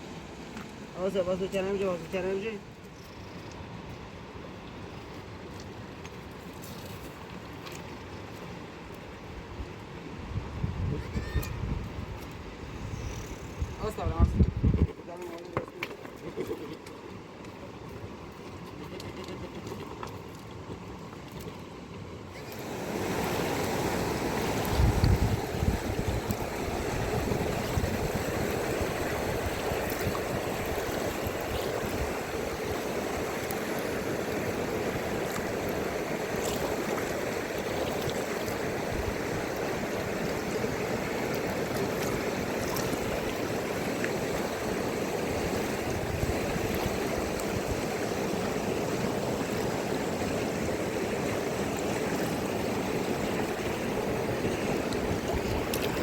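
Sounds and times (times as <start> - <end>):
river water rushing: 15.0 - 56.0.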